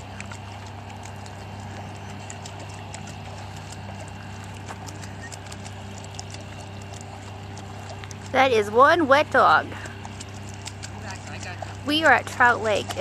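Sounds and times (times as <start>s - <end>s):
low background hum: 0.0s - 13.0s
water splashing and trickling: 0.0s - 13.0s.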